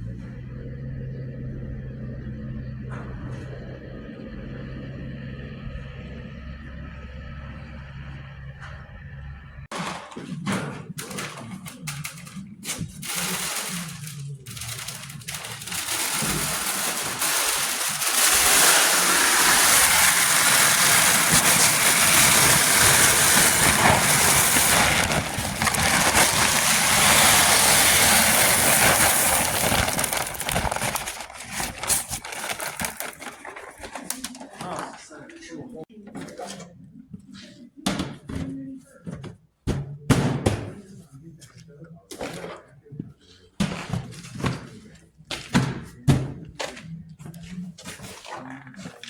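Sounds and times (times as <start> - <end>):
seeds pouring in a rattle: 13.0 - 33.2.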